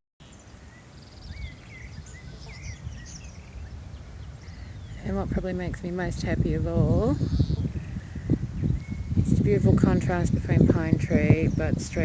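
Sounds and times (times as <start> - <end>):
bird trill: 0.2 - 5.0, 7.2 - 9.2
small birds chirping: 0.2 - 12.0
steady low rumble: 2.6 - 12.0.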